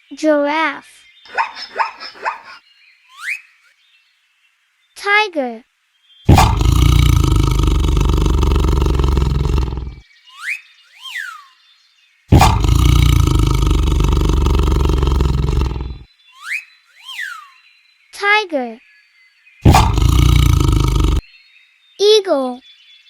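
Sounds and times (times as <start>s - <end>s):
high whistle-like calls: 3.1s - 3.8s, 10.3s - 11.6s, 16.4s - 17.6s
tiger roaring: 6.3s - 10.0s, 12.3s - 16.0s, 19.6s - 21.2s.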